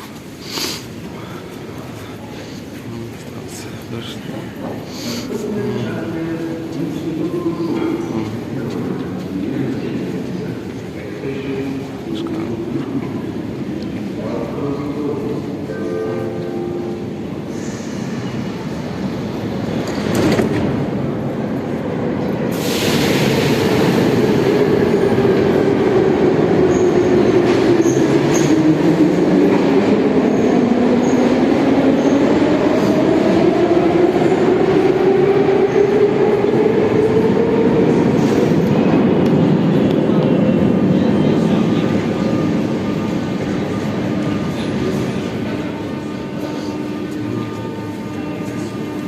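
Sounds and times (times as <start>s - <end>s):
train wheels rumbling on rails: 17.1s - 49.0s.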